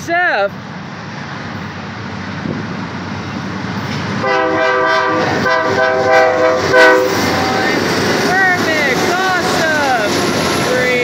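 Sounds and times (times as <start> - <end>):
freight train rumbling: 0.0 - 11.0
locomotive air horn blasts: 4.2 - 7.4.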